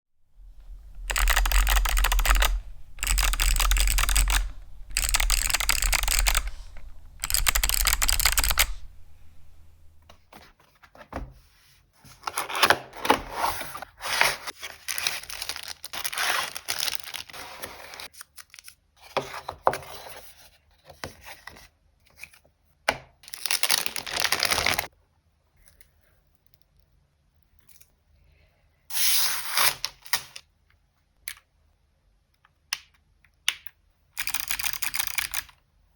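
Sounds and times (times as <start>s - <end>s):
packaging rustling and crinkling: 12.2s - 18.1s, 23.3s - 24.9s
packaging ripping: 14.6s - 18.0s, 23.3s - 24.9s.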